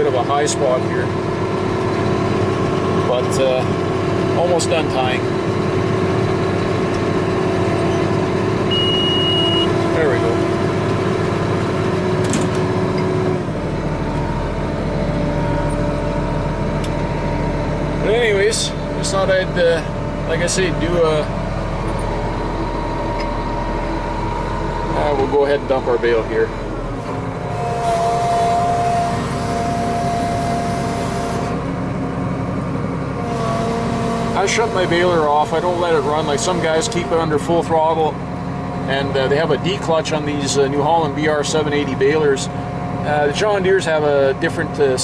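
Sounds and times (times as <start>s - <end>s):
steady whine: 0.0s - 33.5s
tractor diesel engine running: 0.0s - 45.0s.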